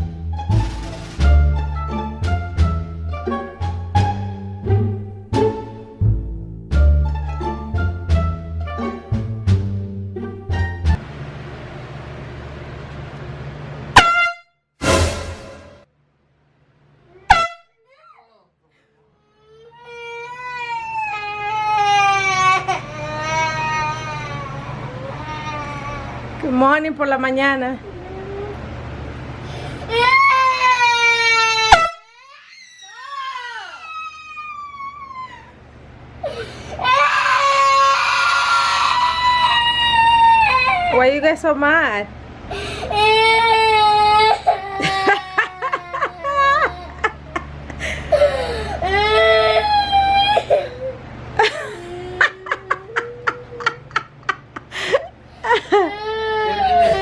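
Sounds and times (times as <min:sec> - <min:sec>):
air horn blast: 0:13.9 - 0:15.8, 0:17.3 - 0:17.7, 0:31.7 - 0:32.1
air horn click: 0:14.0 - 0:14.4
young child crying: 0:19.2 - 0:26.2, 0:29.9 - 0:35.6, 0:36.2 - 0:41.0, 0:42.6 - 0:47.2, 0:48.1 - 0:54.0, 0:55.6 - 0:57.0
person laughing: 0:44.7 - 0:48.7, 0:51.4 - 0:57.0.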